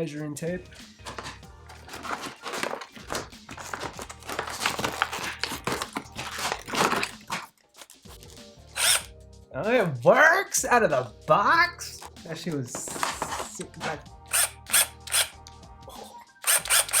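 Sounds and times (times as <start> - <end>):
plastic packaging crinkling: 1.0 - 8.3, 12.8 - 14.0.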